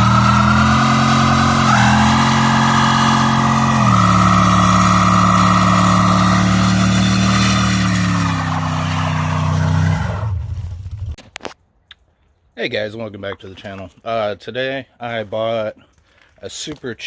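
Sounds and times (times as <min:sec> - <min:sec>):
car engine revving high: 0:00.0 - 0:10.6.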